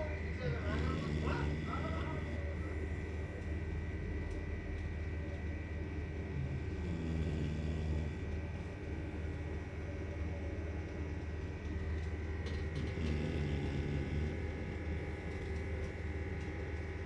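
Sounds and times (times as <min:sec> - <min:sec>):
steady low hum: 0:00.0 - 0:17.0
dog snoring: 0:00.3 - 0:03.1, 0:06.2 - 0:09.2, 0:12.6 - 0:15.6.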